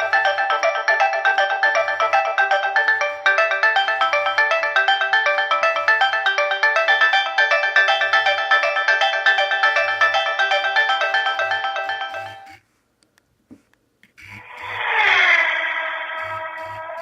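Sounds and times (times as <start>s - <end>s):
polyphonic phone ringtone: 0.0s - 12.6s.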